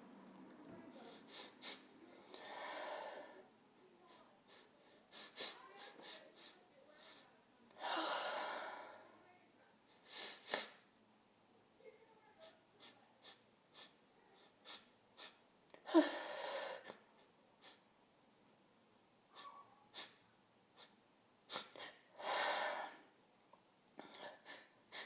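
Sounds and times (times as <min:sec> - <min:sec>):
sniffs and breaths: 0:00.9 - 0:03.4, 0:04.1 - 0:07.4, 0:09.9 - 0:10.8, 0:12.4 - 0:15.4, 0:20.8 - 0:23.1.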